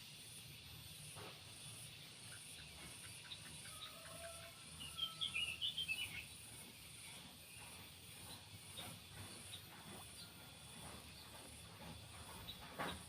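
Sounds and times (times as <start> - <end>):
insects trilling: 0.0 - 13.0
bird twittering chirps: 1.9 - 10.4.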